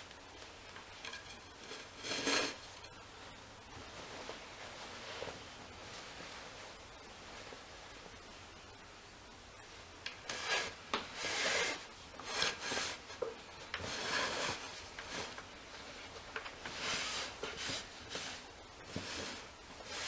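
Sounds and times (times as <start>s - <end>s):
fabric rubbing and scraping: 1.0s - 2.8s, 3.7s - 7.7s, 10.3s - 13.2s, 13.8s - 20.0s.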